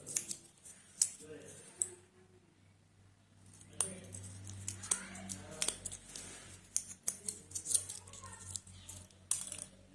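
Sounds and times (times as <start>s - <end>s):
plastic capsules snapping: 6.7s - 9.8s.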